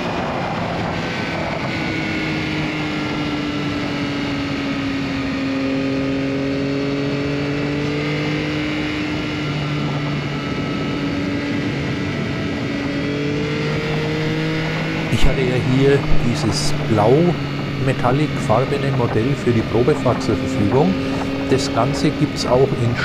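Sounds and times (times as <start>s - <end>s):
motorcycle engine cruising: 0.0s - 23.0s
wind rushing: 9.7s - 23.0s.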